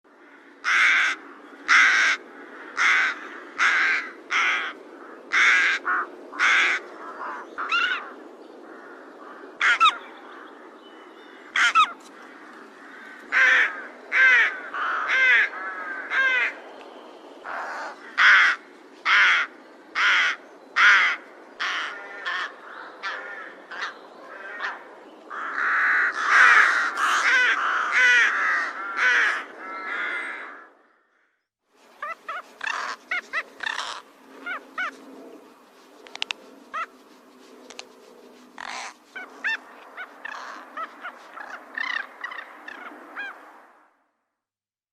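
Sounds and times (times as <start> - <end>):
steady low background noise: 0.1 - 30.8
crows cawing: 0.2 - 16.6, 17.4 - 31.3, 32.0 - 35.0, 36.1 - 43.4.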